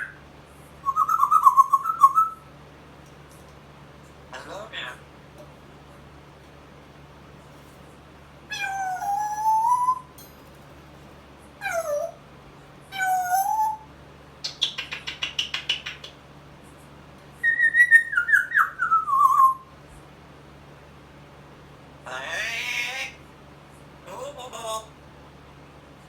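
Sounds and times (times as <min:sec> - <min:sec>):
parrot whistled cries: 0:00.8 - 0:02.5, 0:08.5 - 0:10.2, 0:12.9 - 0:13.9, 0:17.4 - 0:19.7, 0:22.1 - 0:23.2
parrot whistling: 0:00.8 - 0:02.5, 0:08.5 - 0:10.1, 0:17.4 - 0:19.7.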